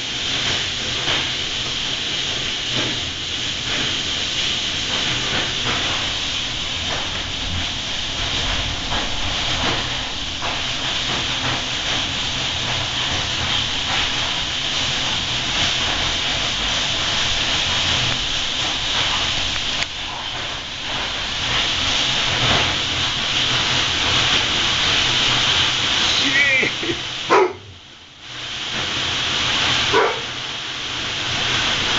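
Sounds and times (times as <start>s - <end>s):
hail and rain pelting down: 0.0s - 31.9s.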